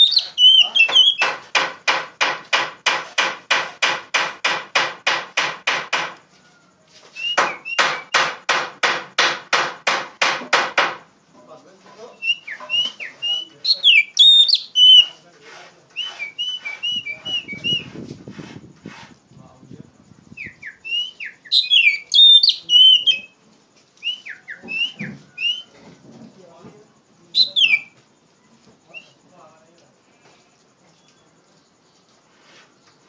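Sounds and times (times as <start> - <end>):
bird singing harsh notes and whistles: 0.0 - 1.4, 7.0 - 8.3, 12.1 - 15.2, 15.9 - 18.0, 20.2 - 23.4, 24.0 - 25.8, 27.2 - 28.0, 28.8 - 29.2.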